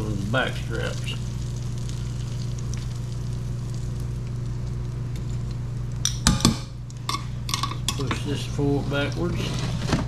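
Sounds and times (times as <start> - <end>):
frog legs sizzling in hot oil: 0.0 - 7.5
low hum: 0.0 - 9.0
utensil clanking against pan: 6.1 - 8.3.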